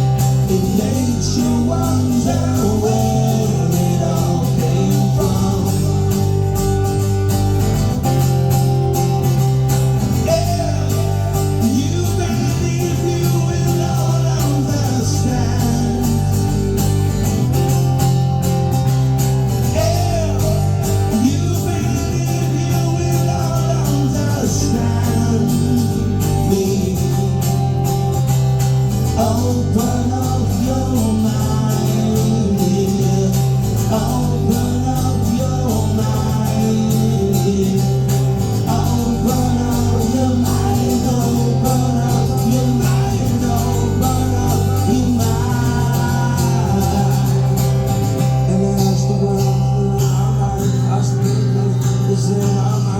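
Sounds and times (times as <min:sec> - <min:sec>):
person singing: 0:00.0 - 0:06.5, 0:10.2 - 0:16.7, 0:19.6 - 0:28.1, 0:29.0 - 0:52.9
bass line: 0:00.0 - 0:52.9
guitar: 0:00.0 - 0:52.9.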